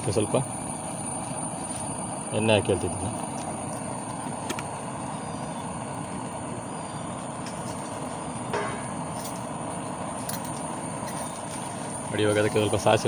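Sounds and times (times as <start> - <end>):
brief clink: 8.6 - 9.6.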